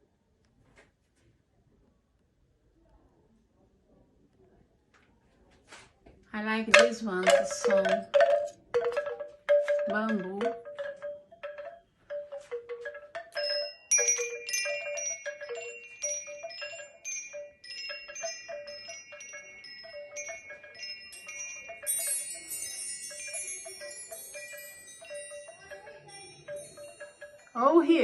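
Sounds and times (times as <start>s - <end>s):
bamboo chimes clonking: 6.7s - 28.0s
metal chimes ringing: 6.7s - 28.0s.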